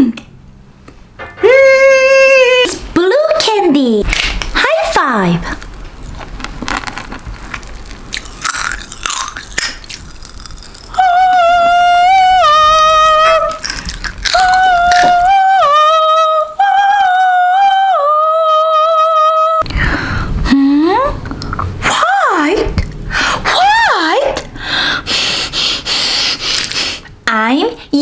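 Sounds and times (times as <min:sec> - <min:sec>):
child singing wordless tune: 0:11.0 - 0:13.6, 0:14.4 - 0:18.8.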